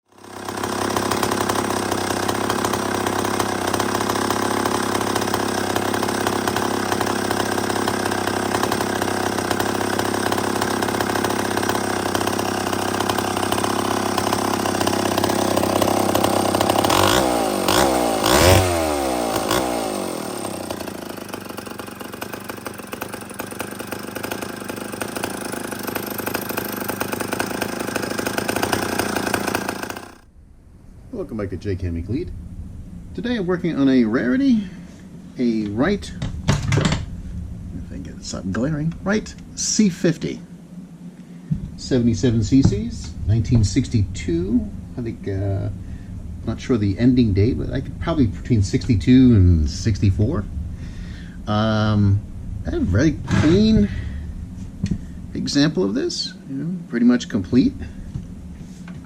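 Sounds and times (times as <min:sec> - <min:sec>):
chainsaw engine running and revving: 0:00.0 - 0:30.3.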